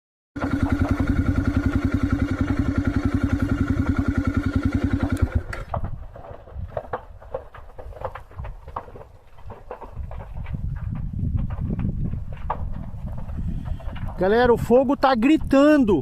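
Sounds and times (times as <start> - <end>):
vehicle engine idling: 0.4 - 5.8
fire crackling and popping: 2.6 - 15.7.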